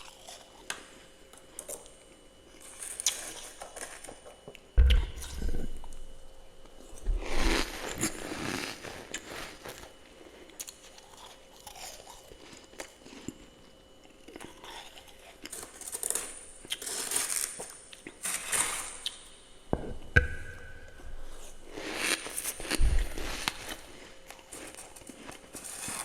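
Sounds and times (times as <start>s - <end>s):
chewing and crunching frost: 0.0s - 19.3s, 21.2s - 26.0s
low thump: 4.8s - 5.6s.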